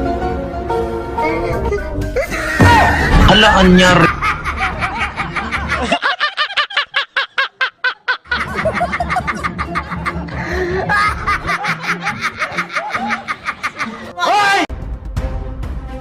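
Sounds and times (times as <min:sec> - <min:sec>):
background music: 0:00.0 - 0:16.0
person snickering laughter: 0:04.0 - 0:14.1.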